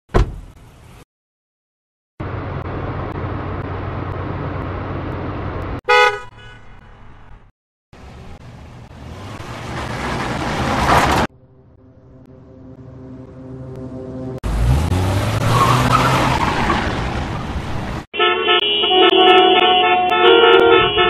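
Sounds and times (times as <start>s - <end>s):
car horn honk: 5.8s - 6.8s, 18.1s - 21.0s
vehicle approaching: 7.1s - 18.1s.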